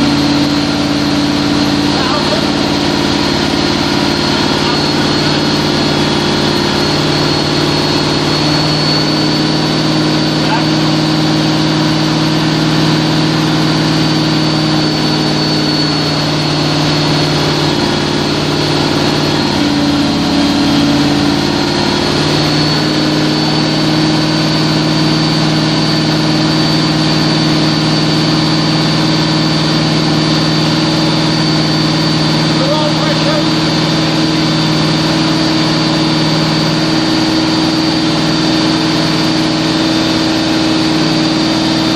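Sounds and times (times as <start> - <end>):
boat engine idling: 0.0 - 41.9.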